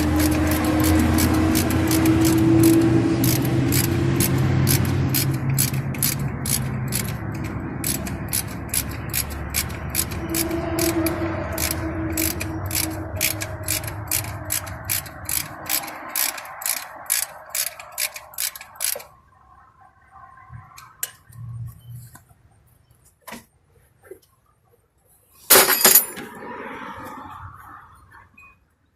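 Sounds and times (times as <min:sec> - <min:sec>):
ratchet wrench clicking: 0:00.0 - 0:19.1.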